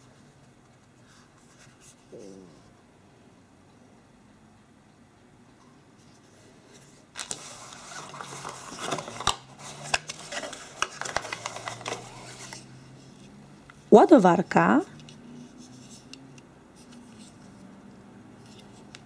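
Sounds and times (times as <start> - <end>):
packaging rustling and scraping: 6.1 - 13.3.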